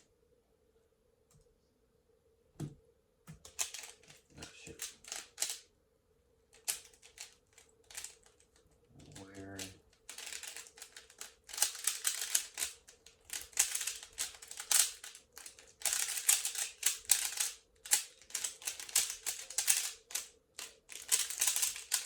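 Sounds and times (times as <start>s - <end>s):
faint steady hum: 0.0s - 22.0s
rapid plastic clicking of puzzle cube: 3.3s - 5.6s, 6.5s - 22.0s.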